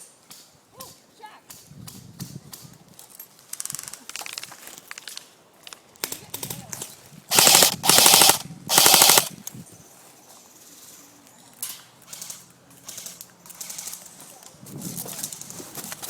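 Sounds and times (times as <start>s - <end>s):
faint clicks and rustles: 2.5s - 16.0s
airsoft rifle full-auto bursts: 7.3s - 9.3s.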